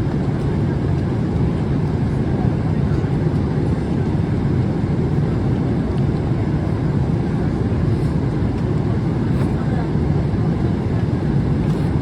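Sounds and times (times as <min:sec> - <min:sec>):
airplane cabin engine rumble: 0:00.0 - 0:12.0.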